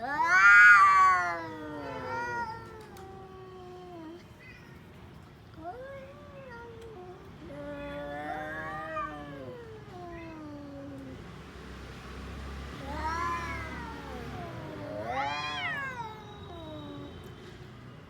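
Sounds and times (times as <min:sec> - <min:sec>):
cat yowling meows: 0:00.0 - 0:04.8, 0:05.6 - 0:11.3, 0:12.8 - 0:17.2.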